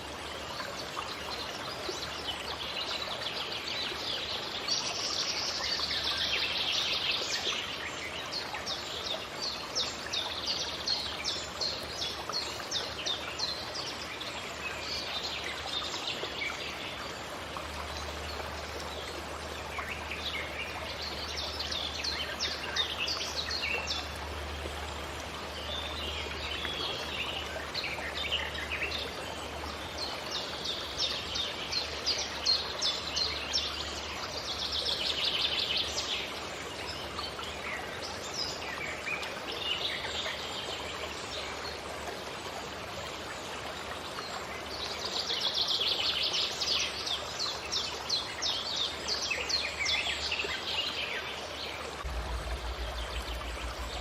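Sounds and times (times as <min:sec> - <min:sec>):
stream rushing: 0:42.4 - 0:54.0.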